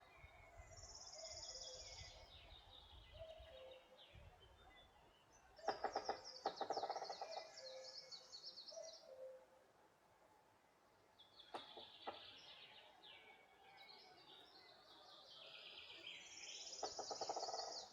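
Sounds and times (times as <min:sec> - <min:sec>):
songbirds trilling: 0:00.0 - 0:09.4, 0:11.2 - 0:17.9
faint low bird calls: 0:11.4 - 0:17.9.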